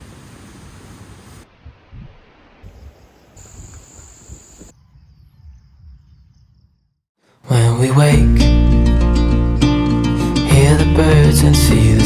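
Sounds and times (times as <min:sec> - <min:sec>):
wind gusting on microphone: 0:00.0 - 0:06.4.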